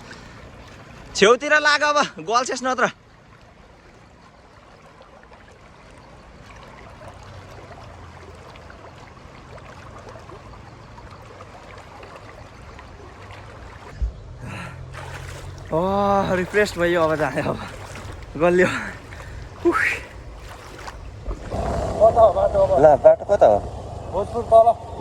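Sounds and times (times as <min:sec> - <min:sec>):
river water flowing over stones: 0:00.0 - 0:25.0.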